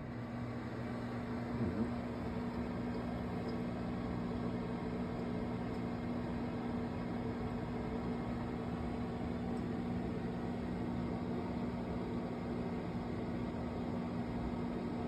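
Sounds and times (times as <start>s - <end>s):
microwave oven humming: 0.0s - 15.0s.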